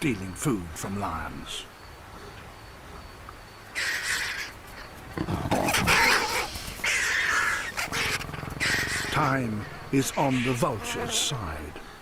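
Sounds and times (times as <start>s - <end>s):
vultures hissing calls: 3.7s - 12.0s
lion growling: 5.1s - 11.1s.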